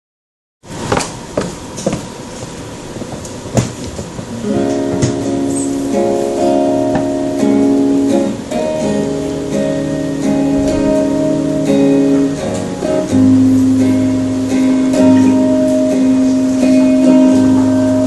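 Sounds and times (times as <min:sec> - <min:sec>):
guitar chords: 0:03.5 - 0:18.0
live band instrumental: 0:04.4 - 0:18.0.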